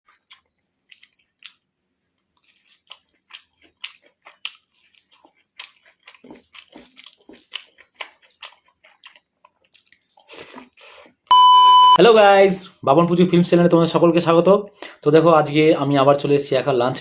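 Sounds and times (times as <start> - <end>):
person chewing crunchy food: 0.0 - 11.3.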